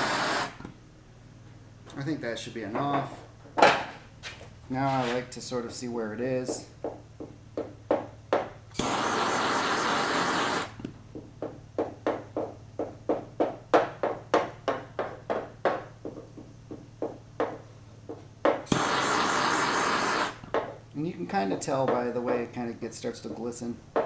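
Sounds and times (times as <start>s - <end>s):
steady hissing: 8.7s - 10.8s, 18.7s - 20.5s
low steady hum: 20.3s - 24.0s.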